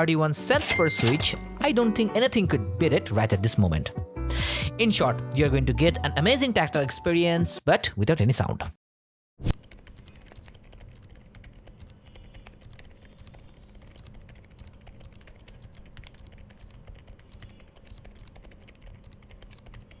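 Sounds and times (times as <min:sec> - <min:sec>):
quiet damped keyboard typing: 0:09.6 - 0:20.0.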